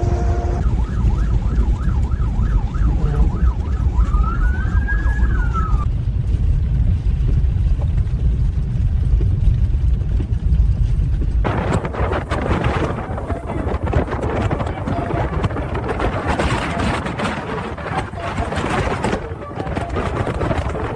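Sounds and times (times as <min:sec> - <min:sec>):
emergency siren yelping and wailing: 0:00.0 - 0:05.9, 0:12.4 - 0:20.9
heavy low rumble: 0:00.0 - 0:20.9.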